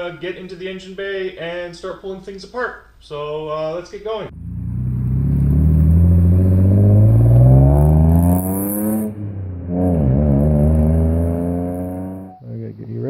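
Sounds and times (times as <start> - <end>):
car engine revving: 4.3 - 12.4.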